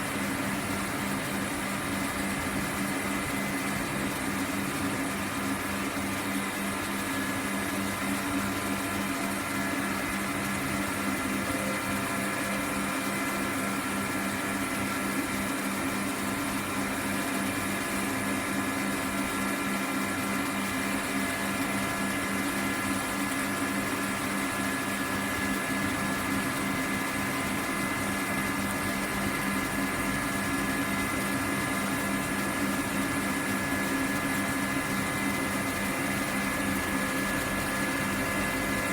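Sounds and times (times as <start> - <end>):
laser cutting machine humming: 19.2 - 38.9.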